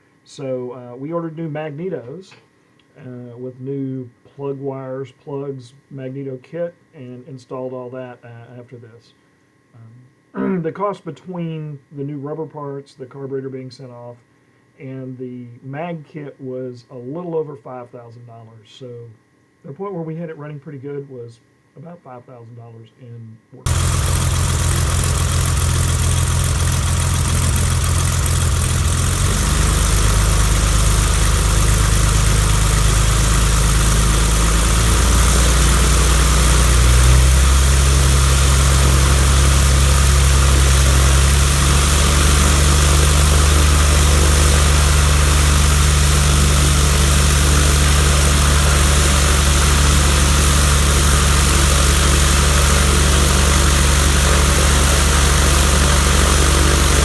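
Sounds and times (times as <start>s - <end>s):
aircraft engine and propeller: 23.7s - 57.0s.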